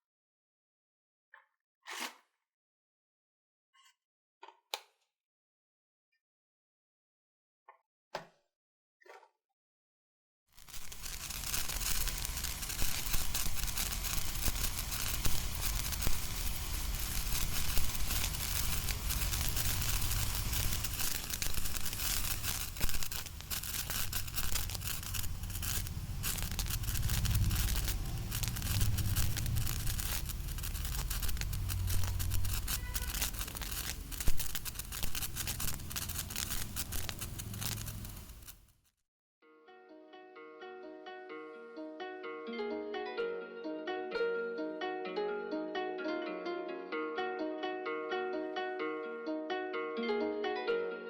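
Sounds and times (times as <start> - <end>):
loud firework cracks: 10.6 - 38.6
firework crackling: 10.6 - 38.7.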